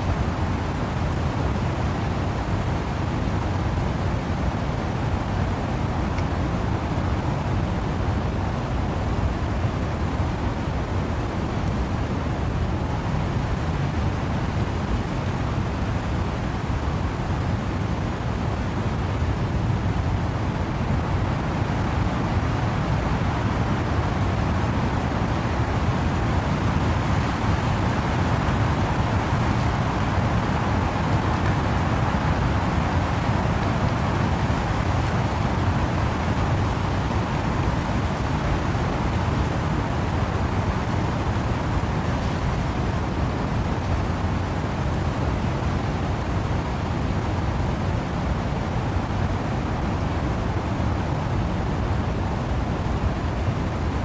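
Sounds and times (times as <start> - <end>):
wind and rain through trees: 0.0 - 54.0.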